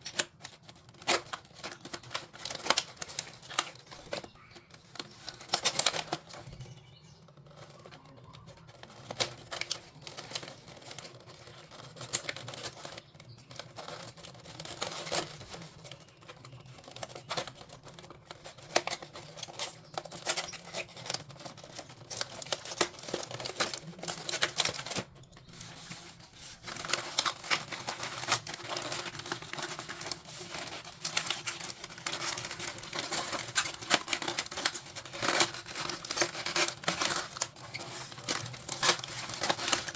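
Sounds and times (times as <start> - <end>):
toys clicking and tapping: 0.0 - 26.0, 26.6 - 39.9
plastic packaging crinkling: 0.0 - 39.9.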